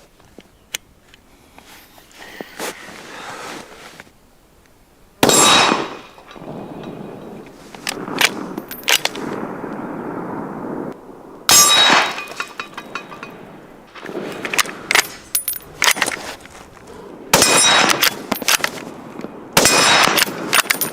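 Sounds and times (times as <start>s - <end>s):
sharp ringing bangs: 5.2s - 6.5s, 11.5s - 13.5s, 17.3s - 18.4s, 19.6s - 20.9s.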